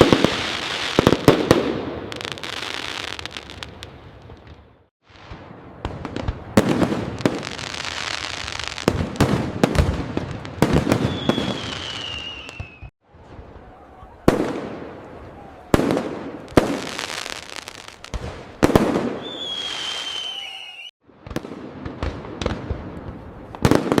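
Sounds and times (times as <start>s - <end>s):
fireworks bangs: 0.0s - 24.0s
fireworks crackling: 0.0s - 24.0s
falling firework whistle: 10.8s - 12.9s, 18.9s - 21.0s.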